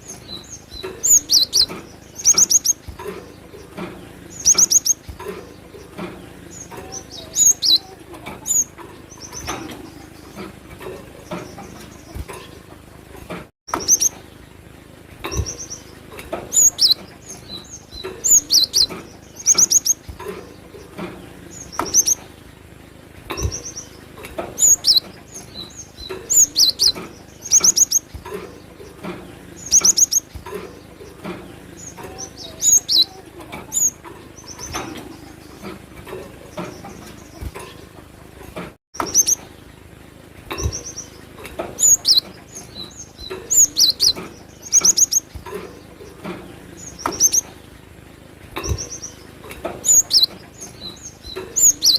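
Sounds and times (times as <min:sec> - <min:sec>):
bird singing rapid high chirps: 0:00.0 - 0:10.6, 0:13.7 - 0:14.3, 0:15.2 - 0:37.9, 0:39.0 - 0:47.6, 0:48.6 - 0:51.9.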